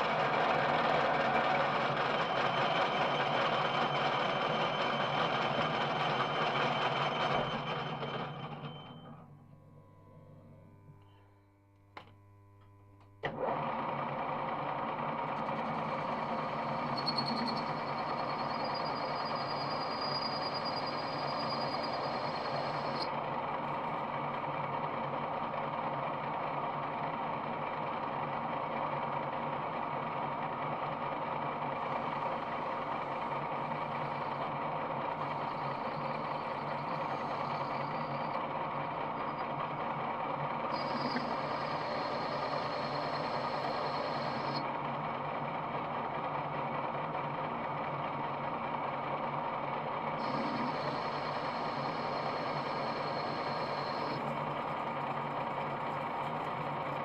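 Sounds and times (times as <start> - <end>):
lathe motor humming: 0.0 - 9.2, 13.2 - 57.0
high whine: 40.8 - 44.7, 50.2 - 56.9.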